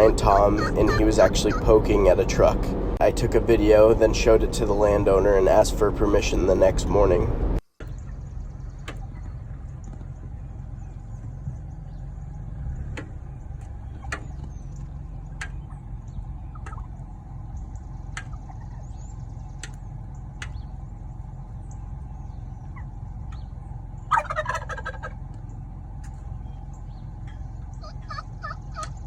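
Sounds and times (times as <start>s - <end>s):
turkey pecking at a truck: 0.0s - 2.0s, 7.7s - 29.0s
low steady rumble: 0.0s - 29.0s
turkey gobble: 0.2s - 1.8s, 16.5s - 16.9s, 18.2s - 19.8s, 24.0s - 25.2s, 27.3s - 29.0s.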